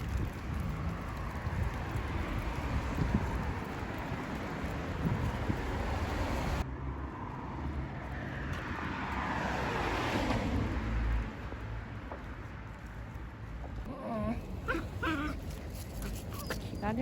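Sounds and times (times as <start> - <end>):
vehicle passing by: 0.1 - 16.8
dog whining: 13.9 - 17.0.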